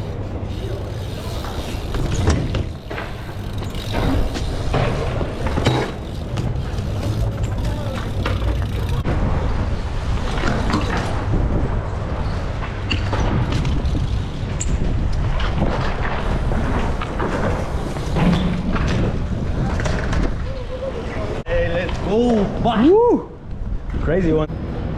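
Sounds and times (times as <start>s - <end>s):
bike rolling on concrete: 0.0s - 24.9s
bike pegs clattering on ground: 0.1s - 9.1s.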